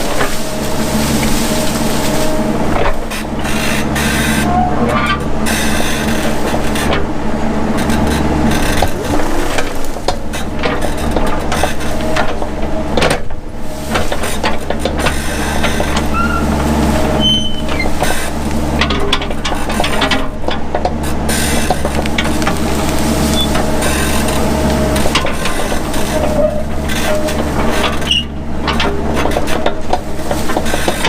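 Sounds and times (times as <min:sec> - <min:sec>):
excavator diesel engine running: 0:00.0 - 0:31.0
sharp knocks and cracks: 0:07.8 - 0:16.1.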